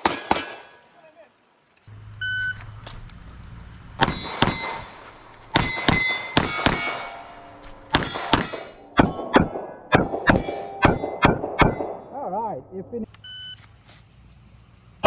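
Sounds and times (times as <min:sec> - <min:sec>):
steel targets clanging: 0:00.0 - 0:01.2, 0:04.0 - 0:12.3
pistol shots: 0:04.0 - 0:12.2.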